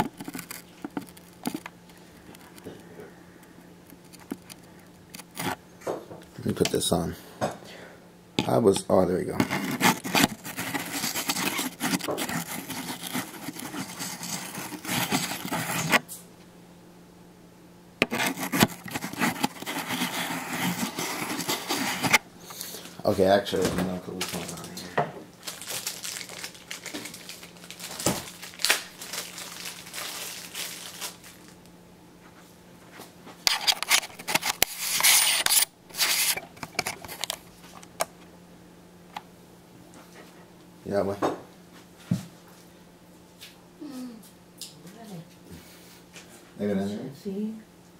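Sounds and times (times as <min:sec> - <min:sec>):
packaging rustling and crinkling: 0:00.0 - 0:02.7, 0:09.3 - 0:16.0, 0:18.0 - 0:22.2, 0:23.8 - 0:31.7, 0:33.5 - 0:38.0
lens rubbing and scraping: 0:05.2 - 0:05.6, 0:09.4 - 0:16.0, 0:18.0 - 0:22.2, 0:33.5 - 0:37.4.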